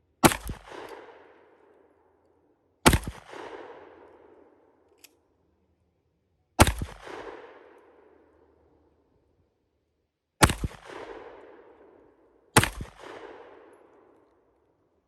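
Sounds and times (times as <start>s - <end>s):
pistol shots with ringing echo: 0.2s - 1.7s, 2.8s - 4.6s, 6.6s - 8.6s, 10.4s - 14.2s.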